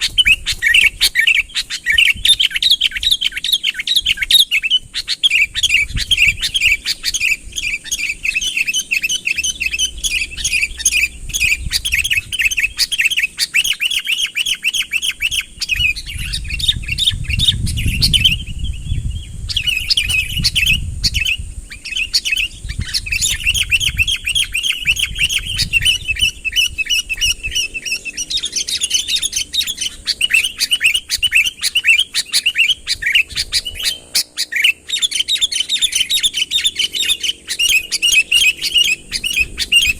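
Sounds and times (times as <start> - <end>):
bulbul chirping: 19.5 - 39.9.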